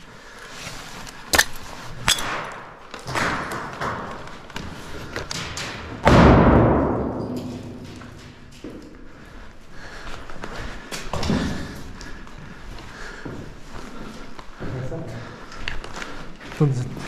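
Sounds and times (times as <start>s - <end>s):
loud echoing bang: 6.1s - 7.4s.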